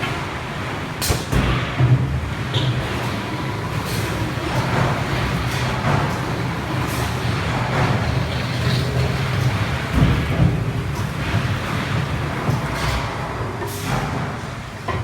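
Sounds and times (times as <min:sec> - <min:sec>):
foaming machine humming: 0:02.2 - 0:13.0.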